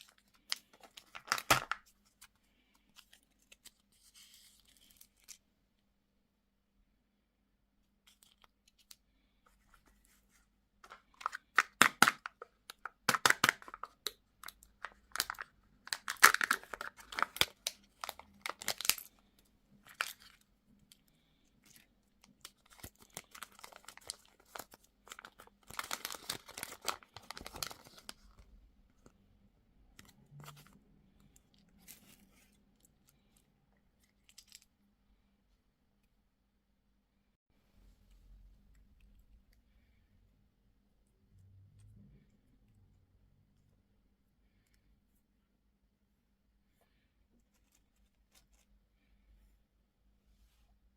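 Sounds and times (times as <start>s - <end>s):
wrapper tearing and crinkling: 0.0s - 1.9s, 11.2s - 19.1s, 21.7s - 28.3s.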